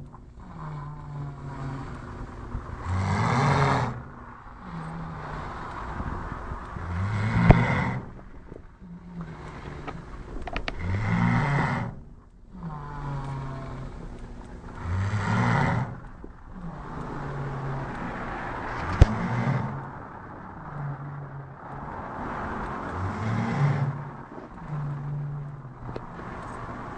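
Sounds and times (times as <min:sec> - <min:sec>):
person snoring: 0:06.8 - 0:08.1, 0:10.7 - 0:14.1.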